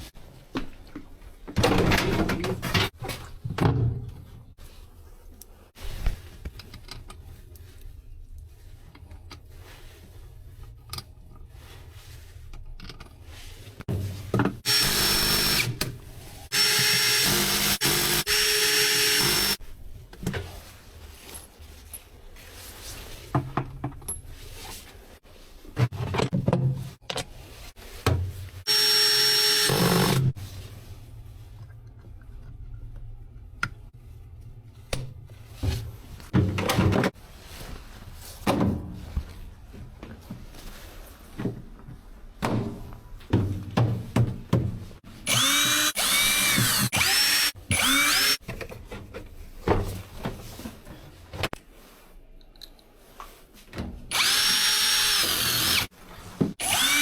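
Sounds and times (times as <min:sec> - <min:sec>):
power drill whining: 0:14.7 - 0:15.8, 0:16.5 - 0:19.6, 0:28.7 - 0:30.3, 0:45.3 - 0:48.4, 0:54.1 - 0:55.9, 0:56.6 - 0:57.0.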